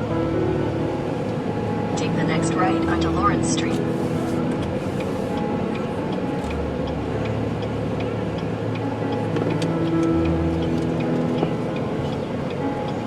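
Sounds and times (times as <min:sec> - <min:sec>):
car engine and road noise: 0:00.0 - 0:13.0
turn signal ticking: 0:00.4 - 0:13.0.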